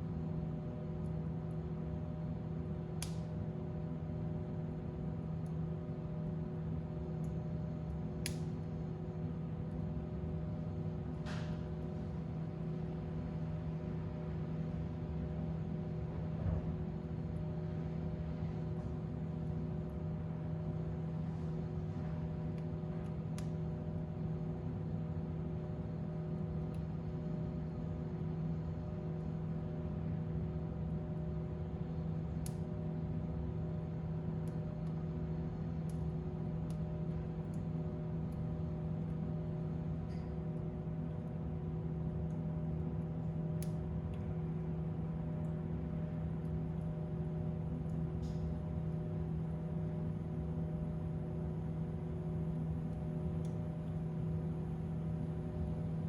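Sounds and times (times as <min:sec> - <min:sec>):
fire crackling: 0:02.8 - 0:03.4, 0:07.2 - 0:08.7, 0:31.2 - 0:39.6, 0:41.1 - 0:55.9.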